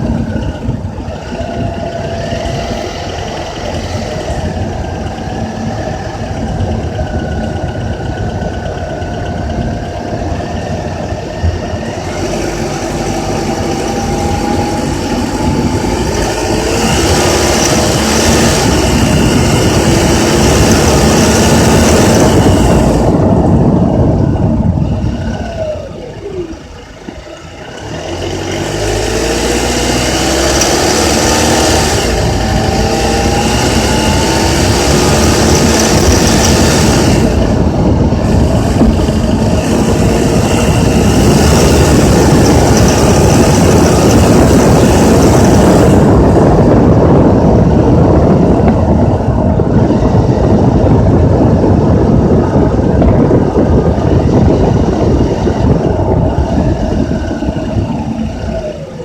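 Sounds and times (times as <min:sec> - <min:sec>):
car engine revving with rattle: 0:00.0 - 0:59.0.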